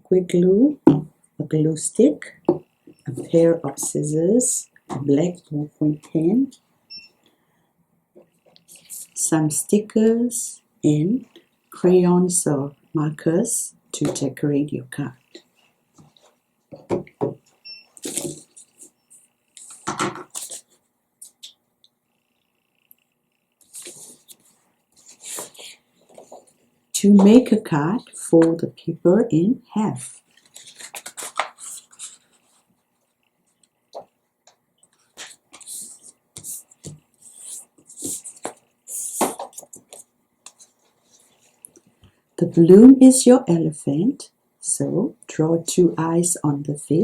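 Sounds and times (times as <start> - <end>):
paper rustling and crinkling: 19.6 - 20.8, 23.6 - 26.5, 30.3 - 32.7
paper rustling on a tabletop: 19.6 - 21.4, 23.6 - 26.6, 30.3 - 32.8, 34.9 - 41.6.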